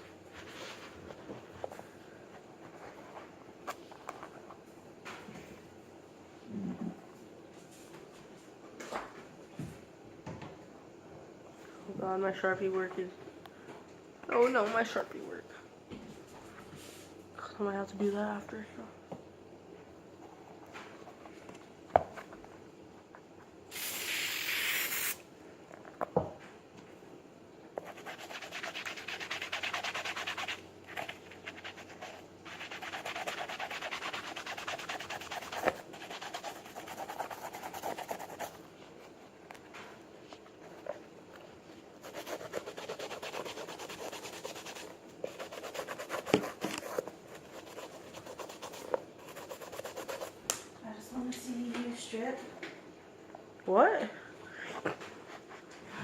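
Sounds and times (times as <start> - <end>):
short hiss: 23.7 - 25.2
scratchy scrubbing of a shoe: 27.8 - 38.6, 42.0 - 50.4.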